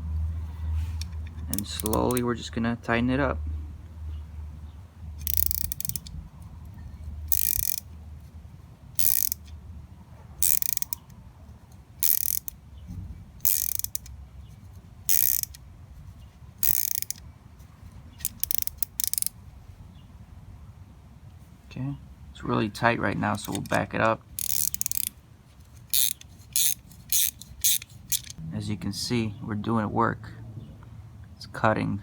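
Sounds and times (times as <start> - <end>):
ratchet wrench clicking: 1.0 - 2.3, 5.2 - 6.2, 7.3 - 7.9, 9.0 - 9.5, 10.4 - 11.1, 12.0 - 12.6, 13.4 - 14.1, 15.1 - 15.6, 16.6 - 17.2, 18.2 - 19.4, 23.4 - 25.2, 25.8 - 28.4.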